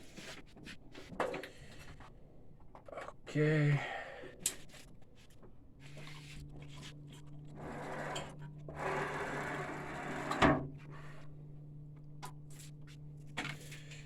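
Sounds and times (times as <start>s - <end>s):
steady electrical hum: 3.3s - 14.0s
mechanical rubbing and whirring: 5.8s - 11.3s.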